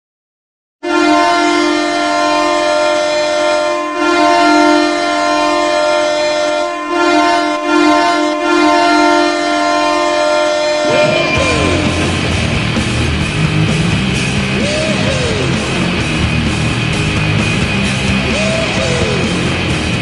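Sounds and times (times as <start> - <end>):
arena goal horn blasting: 0.8 - 13.8.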